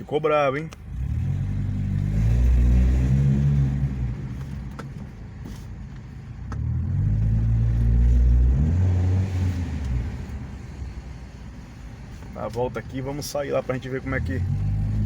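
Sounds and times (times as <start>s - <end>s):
car engine revving loud exhaust: 0.8s - 4.3s, 6.6s - 10.6s, 14.1s - 15.0s.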